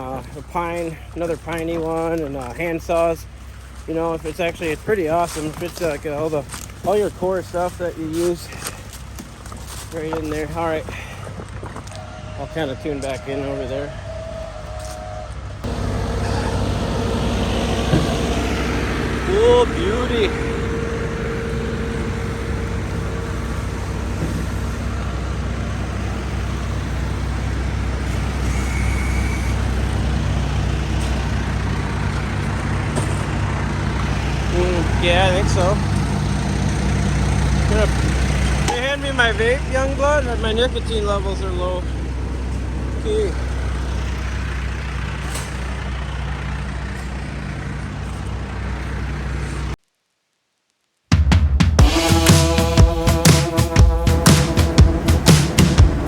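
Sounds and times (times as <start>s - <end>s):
diesel engine running: 0.0s - 49.8s, 51.8s - 56.0s.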